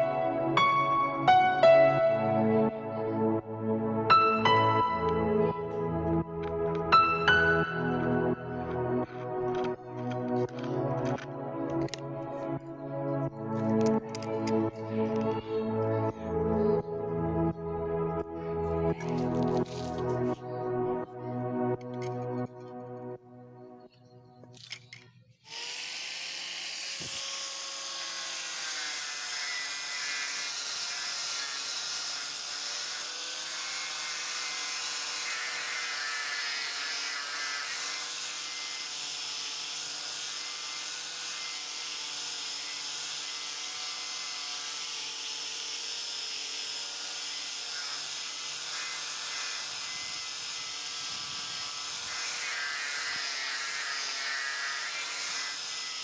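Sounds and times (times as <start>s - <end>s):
angle grinder motor whine: 24.7s - 56.0s.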